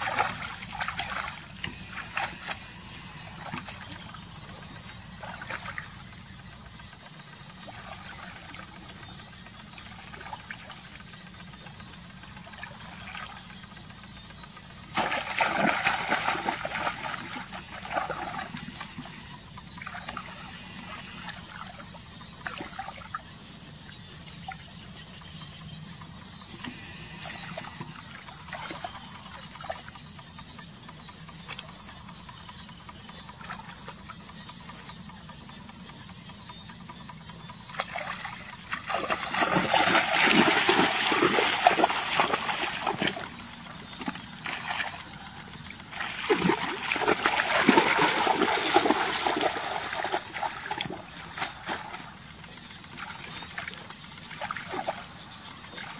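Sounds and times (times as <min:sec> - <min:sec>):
splashing in shallow water: 0:00.0 - 0:06.2, 0:14.8 - 0:23.4, 0:26.6 - 0:30.0, 0:37.7 - 0:55.9
water dribbling: 0:00.0 - 0:06.2, 0:14.8 - 0:24.7, 0:37.6 - 0:55.9.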